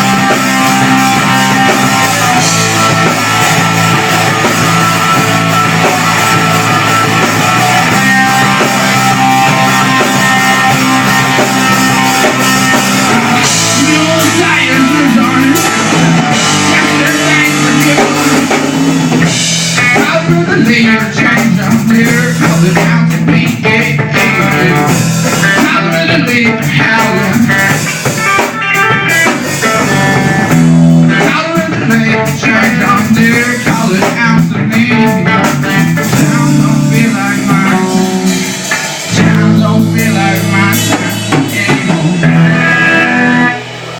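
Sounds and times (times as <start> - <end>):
drum kit: 0.0 - 43.9
live rock band playing: 0.0 - 43.9.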